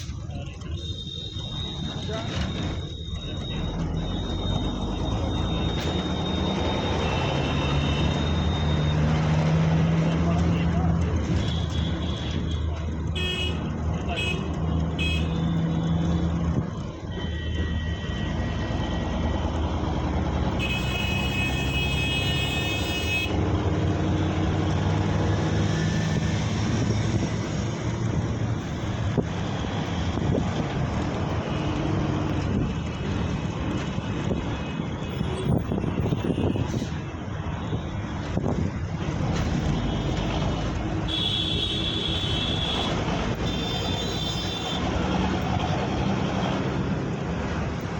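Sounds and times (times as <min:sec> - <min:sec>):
road traffic: 0:00.0 - 0:47.9.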